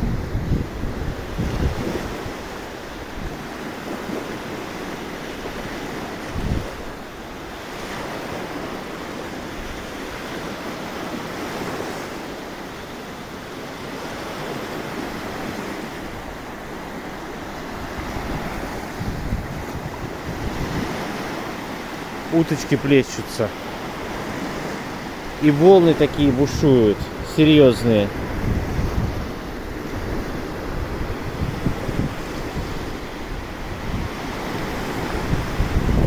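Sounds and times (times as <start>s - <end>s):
wind buffeting microphone: 0.0s - 4.2s, 5.5s - 7.5s, 14.9s - 22.3s, 23.6s - 36.0s
sea surf breaking on shore: 0.0s - 36.0s.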